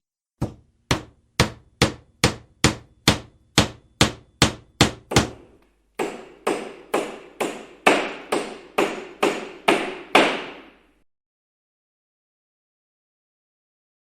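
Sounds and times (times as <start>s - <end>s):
hammer striking wood: 0.4s - 10.9s.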